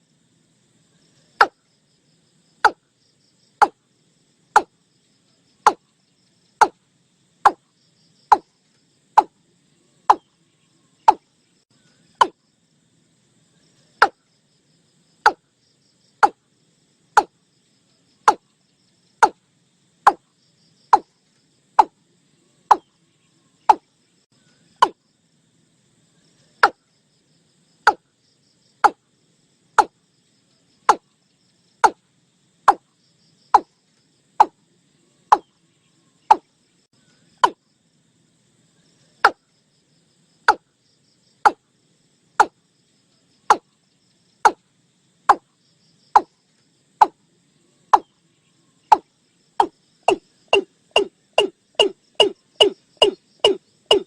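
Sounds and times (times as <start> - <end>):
faint high insect hum: 0.0 - 54.0
bird calling sharp notes: 49.6 - 54.0.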